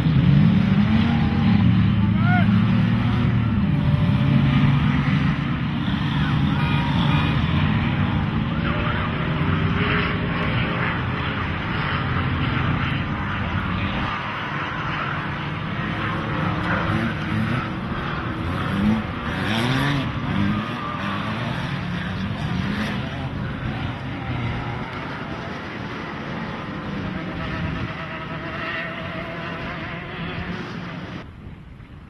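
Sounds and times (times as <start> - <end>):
engine revving: 0.0 - 31.3
race vehicle engine running: 0.0 - 31.3.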